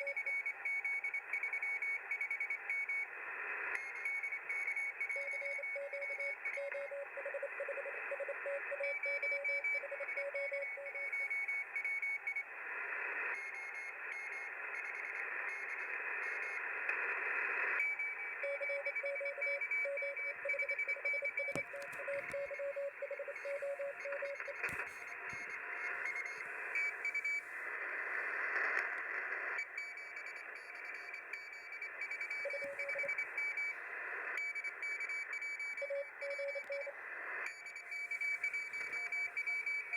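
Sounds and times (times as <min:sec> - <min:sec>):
morse code beeps: 0:04.1 - 0:12.2, 0:17.8 - 0:27.4, 0:29.6 - 0:33.8, 0:34.4 - 0:36.9, 0:37.5 - 0:39.9
static clicks: 0:20.0 - 0:39.9
radio band hiss: 0:21.5 - 0:29.6.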